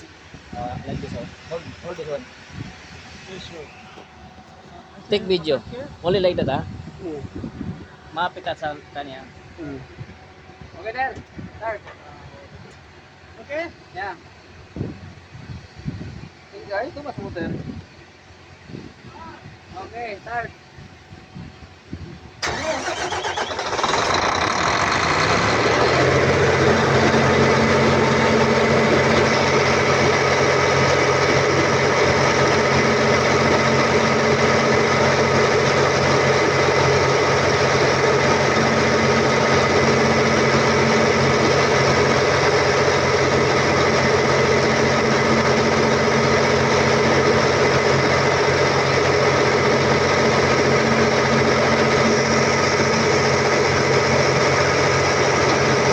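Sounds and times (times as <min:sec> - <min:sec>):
diesel engine running: 0:00.0 - 0:55.9
starter motor cranking: 0:22.4 - 0:55.9.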